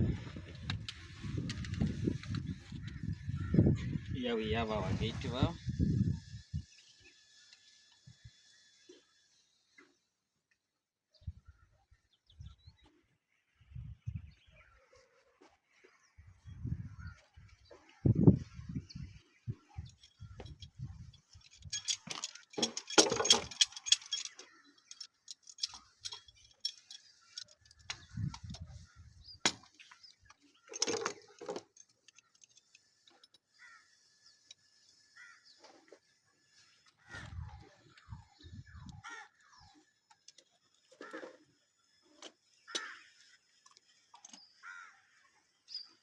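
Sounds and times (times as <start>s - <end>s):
metal pipe fittings clinking: 19.8s - 27.9s, 30.6s - 33.4s.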